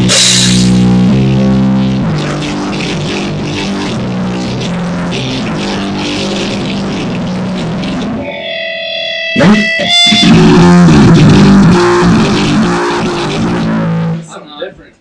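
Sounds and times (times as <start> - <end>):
sharp loud hits: 0.0 - 1.1
live rock music: 0.0 - 14.6
distorted electric guitar: 0.0 - 15.0.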